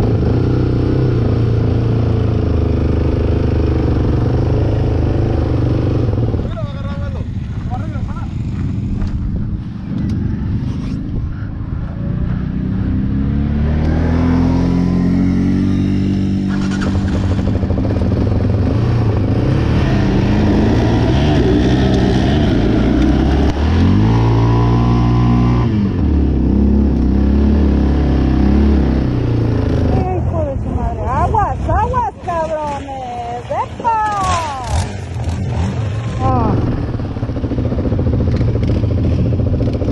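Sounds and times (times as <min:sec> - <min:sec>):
atv engine shifting gears: 0:12.0 - 0:39.9.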